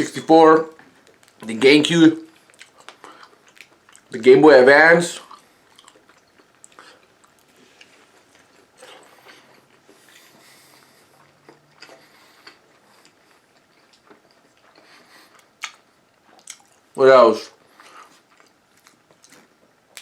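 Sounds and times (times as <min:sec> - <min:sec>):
person chewing: 0:02.3 - 0:04.1, 0:05.2 - 0:17.0, 0:17.6 - 0:20.0.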